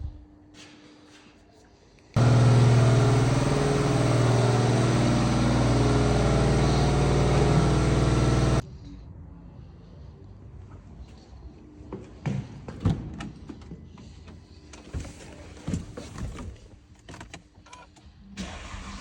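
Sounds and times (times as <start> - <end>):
car engine with loud exhaust: 2.2 - 8.6.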